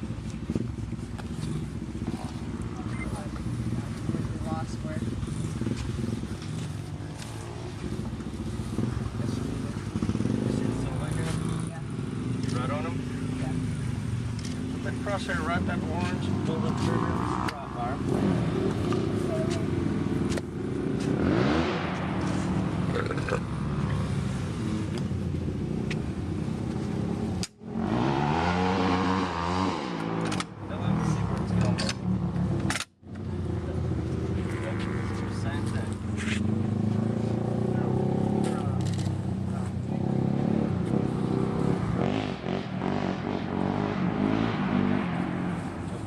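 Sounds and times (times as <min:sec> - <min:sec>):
vehicle engine revving: 0:00.0 - 0:46.0.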